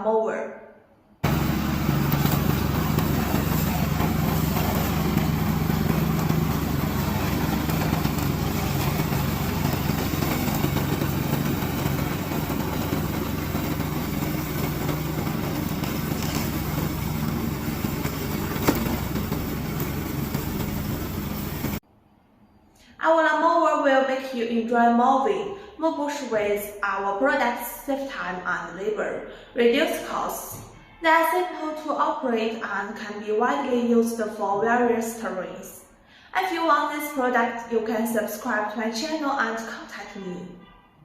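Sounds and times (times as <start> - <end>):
mower engine running: 1.2 - 21.8.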